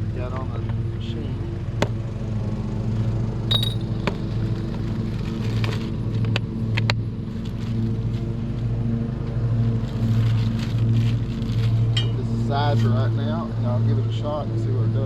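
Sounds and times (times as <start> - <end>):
sharp metallic clicks and knocks: 3.5 - 4.0.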